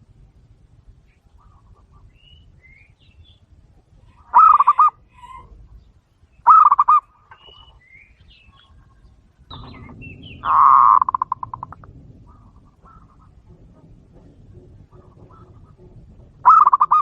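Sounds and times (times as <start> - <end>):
small birds chirping: 0.8 - 17.0
dove cooing: 4.1 - 5.6, 6.4 - 7.7, 8.5 - 17.0.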